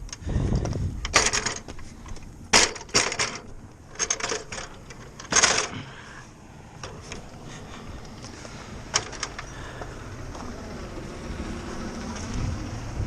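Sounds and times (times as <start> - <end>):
sharp knocks and clanks: 2.5 - 5.8.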